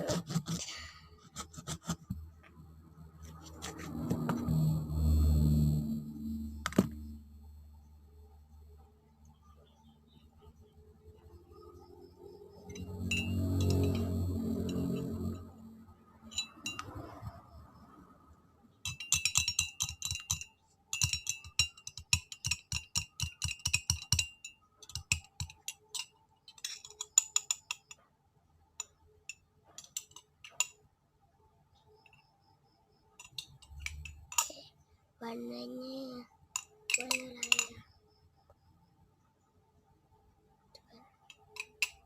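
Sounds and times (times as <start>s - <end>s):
spoon clinking against glass: 12.6s - 15.5s, 16.2s - 17.3s, 18.8s - 28.0s, 28.8s - 30.8s, 33.2s - 34.6s, 36.6s - 37.9s, 41.2s - 42.0s.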